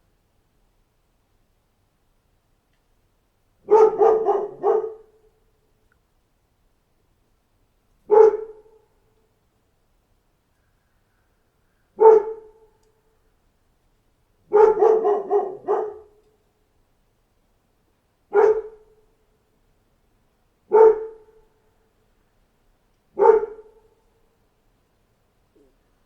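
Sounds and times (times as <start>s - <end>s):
dog barking: 3.6s - 5.2s, 8.1s - 8.9s, 12.0s - 12.7s, 14.5s - 16.2s, 18.3s - 19.0s, 20.7s - 21.4s, 23.2s - 24.0s.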